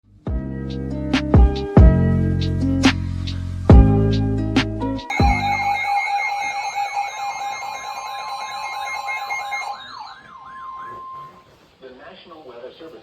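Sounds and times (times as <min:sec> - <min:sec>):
electronic siren yelping: 0:05.1 - 0:11.6
steady alarm tones: 0:05.1 - 0:11.7.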